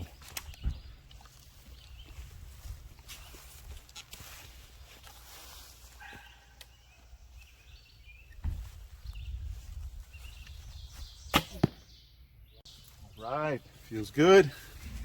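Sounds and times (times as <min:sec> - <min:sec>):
wind rumble on microphone: 0:00.0 - 0:01.1, 0:01.8 - 0:03.8, 0:07.7 - 0:11.3, 0:14.6 - 0:15.0.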